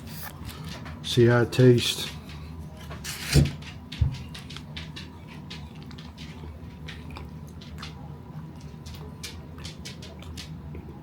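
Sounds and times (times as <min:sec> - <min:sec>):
person chewing food: 0:04.5 - 0:10.9.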